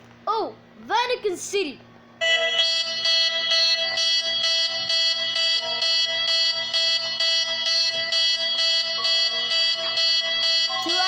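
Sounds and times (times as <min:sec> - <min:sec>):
pulsing buzzing alarm tone: 0:02.2 - 0:11.0.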